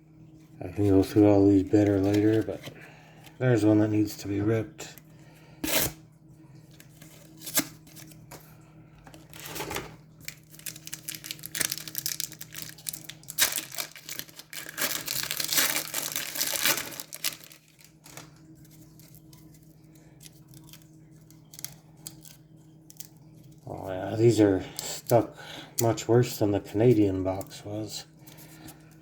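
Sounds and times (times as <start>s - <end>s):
wrapper ripping and crinkling: 9.2s - 23.2s.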